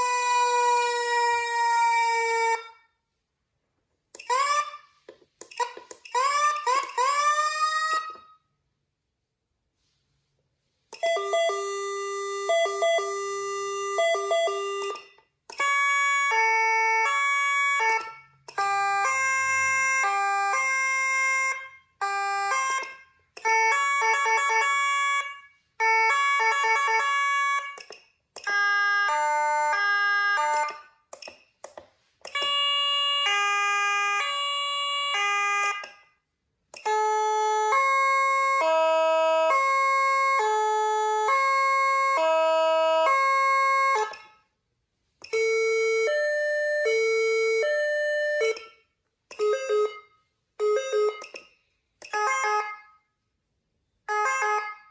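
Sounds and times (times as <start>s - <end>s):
electronic siren tones: 32.3s - 36.0s, 36.8s - 44.3s.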